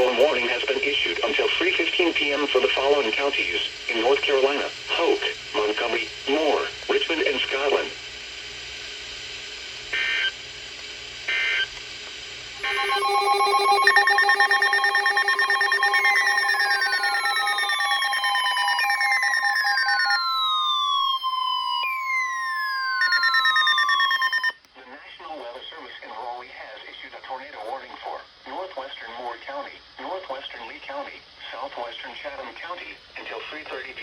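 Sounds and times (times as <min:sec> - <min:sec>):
data-burst chirps: 0:12.6 - 0:24.6
electronic alert tones: 0:12.6 - 0:24.6.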